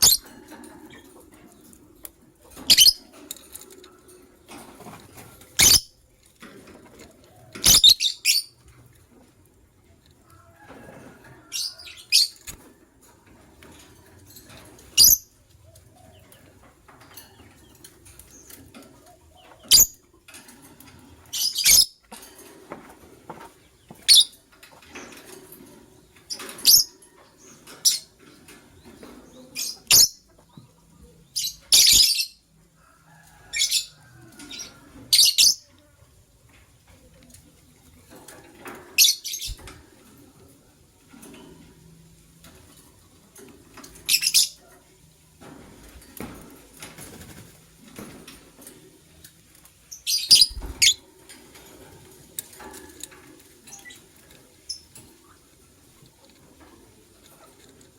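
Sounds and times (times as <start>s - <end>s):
lovebirds chirping: 0.0s - 0.2s, 50.0s - 51.0s.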